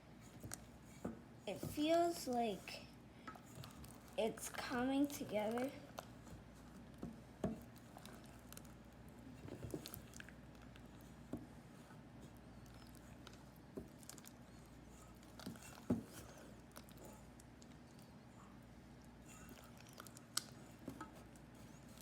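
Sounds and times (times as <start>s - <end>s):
slime squelching by hand: 3.4s - 6.6s.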